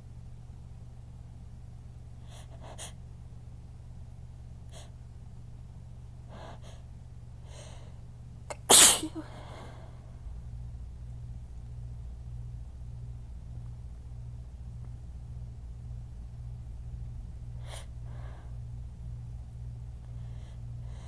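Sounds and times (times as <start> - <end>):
person sneezing: 8.5 - 9.6.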